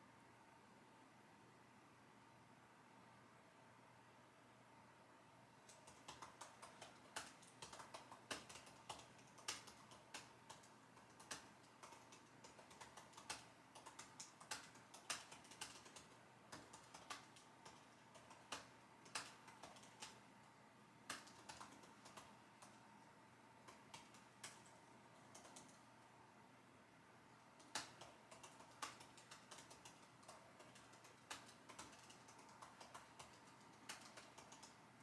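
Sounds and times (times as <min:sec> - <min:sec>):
keyboard key clicks: 0:05.7 - 0:20.2.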